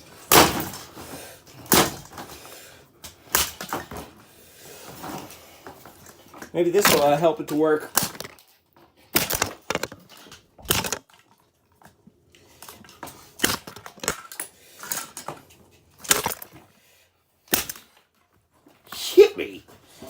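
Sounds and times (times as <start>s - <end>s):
plastic cracking impacts: 0.0s - 4.2s, 4.8s - 11.9s, 12.6s - 16.6s, 17.5s - 18.1s
plastic crackling: 4.8s - 11.3s, 12.3s - 16.6s.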